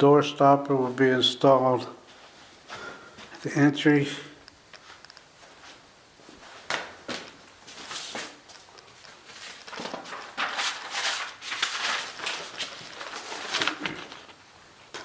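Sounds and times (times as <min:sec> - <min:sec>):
footsteps and scuffing: 0:04.8 - 0:10.4.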